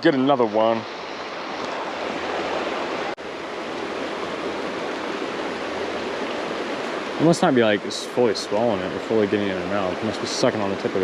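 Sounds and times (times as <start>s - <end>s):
creek water rushing: 0.0s - 11.0s.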